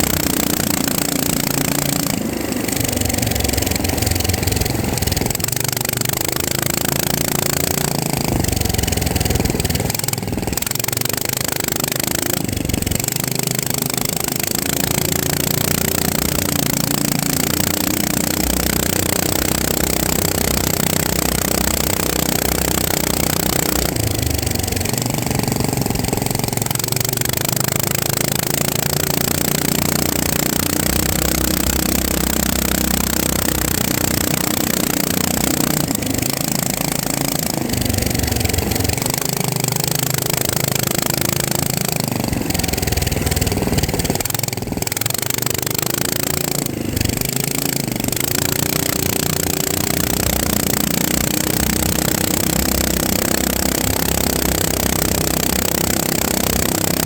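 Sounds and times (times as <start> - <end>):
drone motors buzzing: 0.0 - 57.0.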